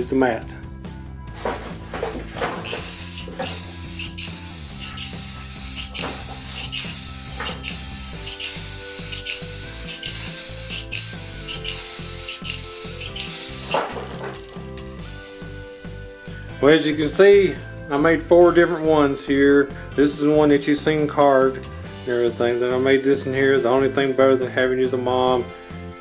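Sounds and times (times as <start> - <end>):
background music: 0.0 - 26.0
aerosol can spraying: 2.6 - 14.7.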